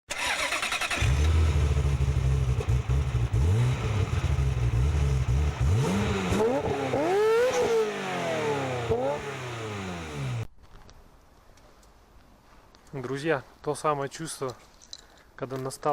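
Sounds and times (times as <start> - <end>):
engine rumbling and revving: 0.1 - 10.5.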